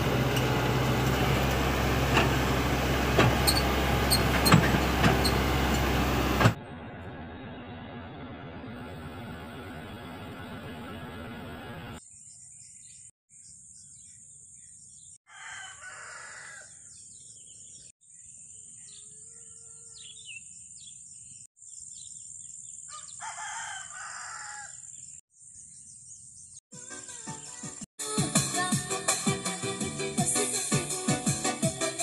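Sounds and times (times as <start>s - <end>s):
bird chirps: 12.0s - 15.2s, 16.7s - 23.2s
birds calling: 15.9s - 23.2s.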